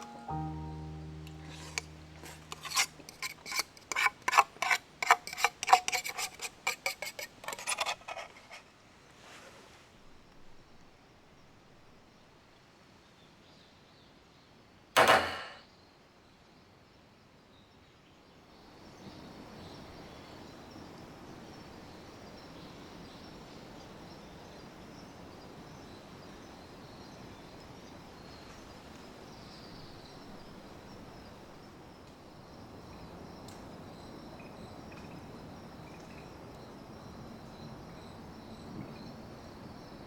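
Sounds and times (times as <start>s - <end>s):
sharp metallic clang: 0.0s - 4.5s, 15.0s - 15.6s
faint high insect chirr: 29.4s - 40.0s.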